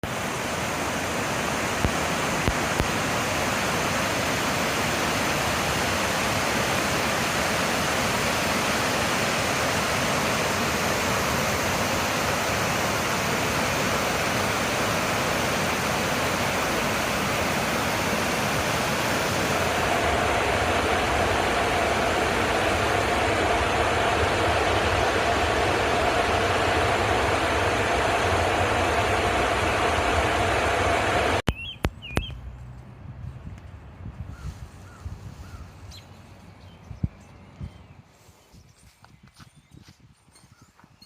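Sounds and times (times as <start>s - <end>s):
flowing water rushing: 0.0s - 31.4s.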